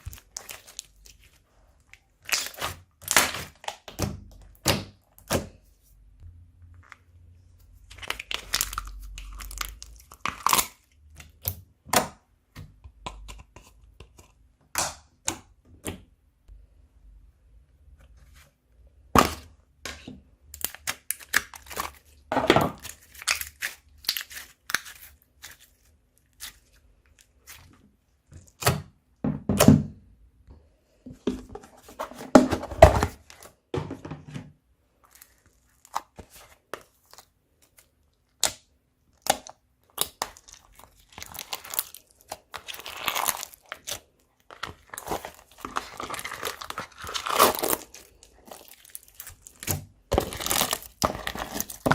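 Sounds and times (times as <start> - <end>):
slime crackling and crunching: 0.0 - 4.7, 7.8 - 11.5, 20.6 - 27.6, 35.0 - 51.9
slime squishes: 0.0 - 16.1, 19.0 - 29.0, 34.9 - 51.9.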